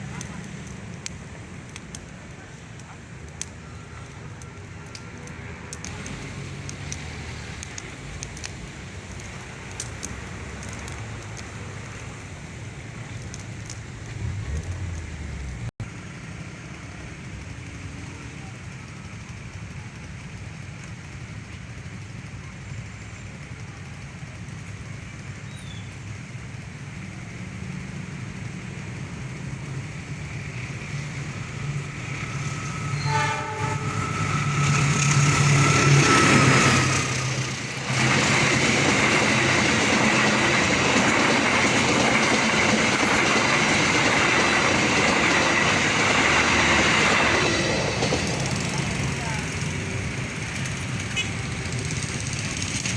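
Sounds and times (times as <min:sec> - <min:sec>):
train passing at speed: 0:00.0 - 0:25.4, 0:26.0 - 0:52.9
wheel and rail noise: 0:00.0 - 0:52.9
train horn: 0:32.6 - 0:36.8.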